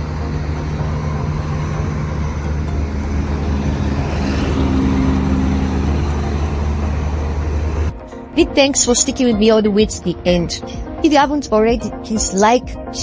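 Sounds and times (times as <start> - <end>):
passing vehicle engine: 0.0 - 8.4
vehicle engine hum: 0.0 - 10.0
road noise: 0.0 - 10.4.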